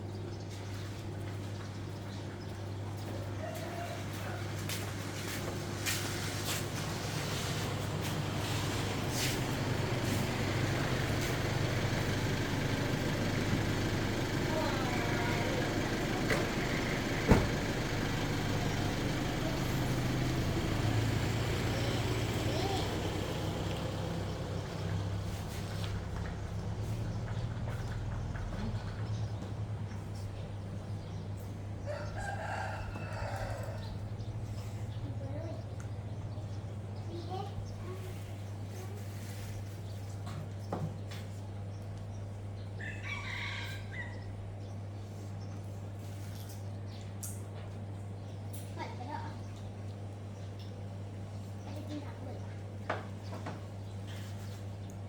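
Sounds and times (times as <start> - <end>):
vehicle engine humming: 2.5 - 39.8.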